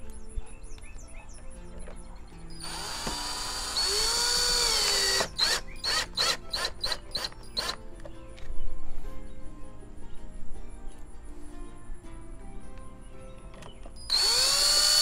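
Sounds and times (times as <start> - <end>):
power drill driving a screw: 2.6 - 7.8, 14.1 - 15.0.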